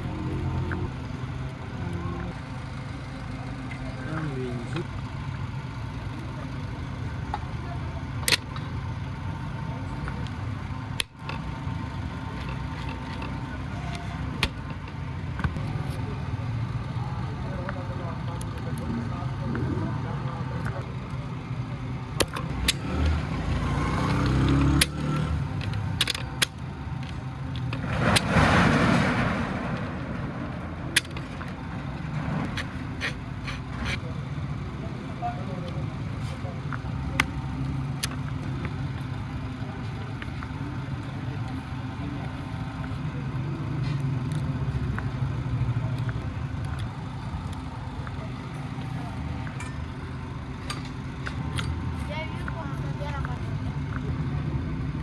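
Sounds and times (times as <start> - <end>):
low engine-like hum: 0.0 - 55.0
tools and metal parts clicking: 24.1 - 27.8, 31.0 - 31.6, 49.4 - 52.1.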